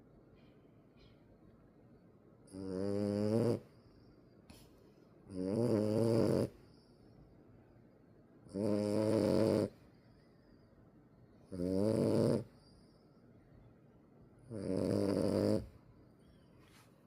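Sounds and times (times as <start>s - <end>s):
puppy snoring: 2.4s - 3.8s, 5.2s - 6.8s, 8.4s - 9.8s, 11.4s - 12.6s, 14.4s - 15.8s.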